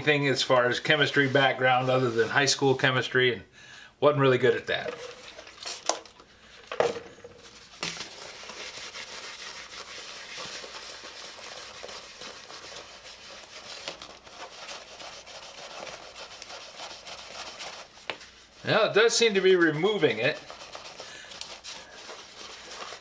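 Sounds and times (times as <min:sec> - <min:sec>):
scrubbing plastic surface: 0:07.4 - 0:23.0.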